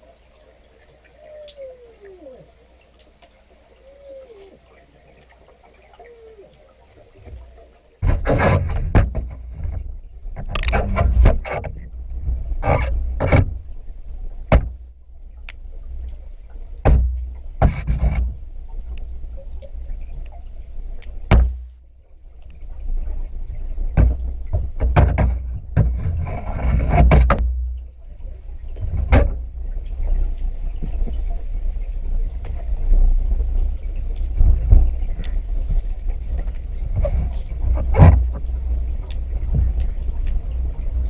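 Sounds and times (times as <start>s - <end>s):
water deep steady rumble: 0.0s - 41.0s
water swishing: 0.0s - 41.0s
sharp knocks: 8.0s - 9.8s, 16.8s - 18.3s, 21.3s - 21.6s.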